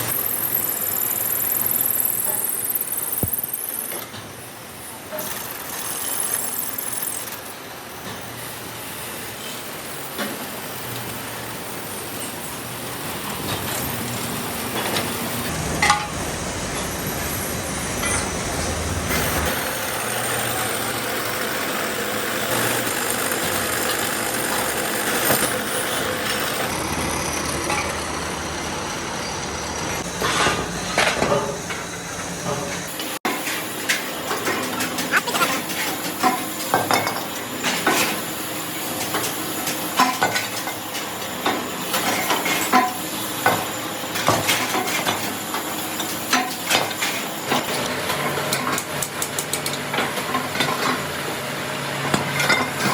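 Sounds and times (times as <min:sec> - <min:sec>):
machine running: 0:00.0 - 0:07.7, 0:12.8 - 0:39.7.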